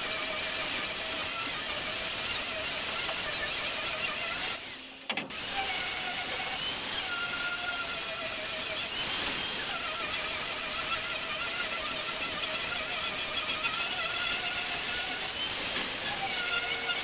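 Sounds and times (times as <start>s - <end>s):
woodworking power tool whining: 0.0s - 17.0s.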